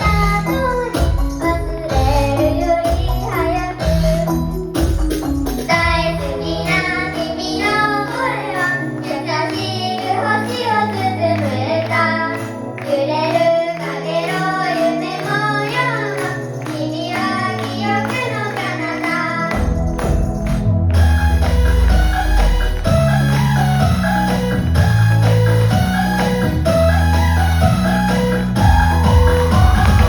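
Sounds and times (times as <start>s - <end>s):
woman singing pop song: 0.0s - 20.2s
backing track with bass line: 19.5s - 30.0s.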